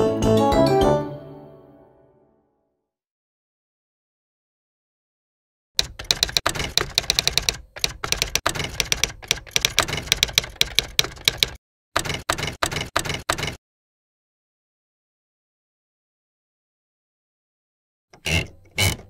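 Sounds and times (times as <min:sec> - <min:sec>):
rapid sharp clicks: 0:05.8 - 0:13.6.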